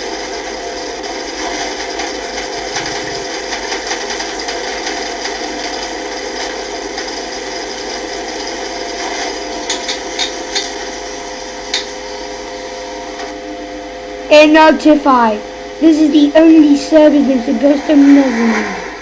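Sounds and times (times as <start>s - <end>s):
elevator machinery running: 0.0s - 19.0s
steady tones: 11.7s - 19.0s.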